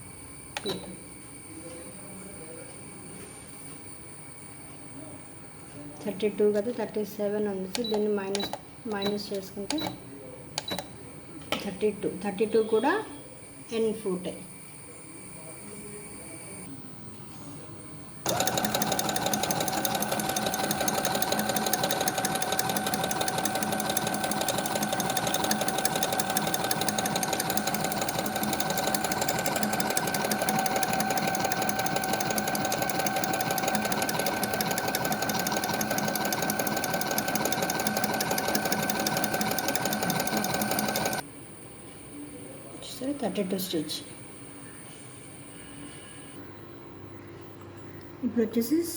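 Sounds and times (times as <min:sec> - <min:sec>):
sewing machine running: 0:18.3 - 0:41.2.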